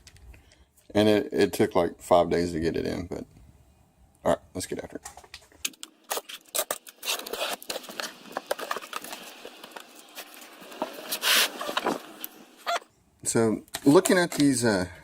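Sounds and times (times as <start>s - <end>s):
cardboard packaging being handled: 6.0s - 12.8s.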